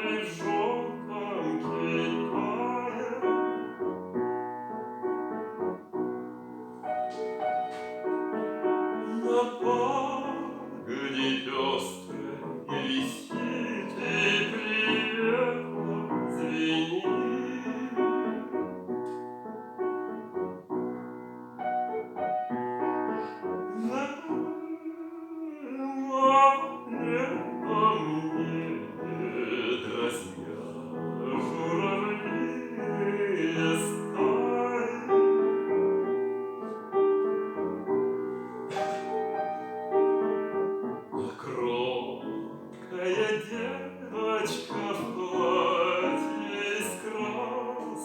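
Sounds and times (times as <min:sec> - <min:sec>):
person singing: 0:00.0 - 0:03.8, 0:08.9 - 0:18.6, 0:23.1 - 0:36.0, 0:38.6 - 0:40.4, 0:41.1 - 0:48.0
piano chords: 0:00.0 - 0:48.0
short hiss: 0:38.5 - 0:39.4.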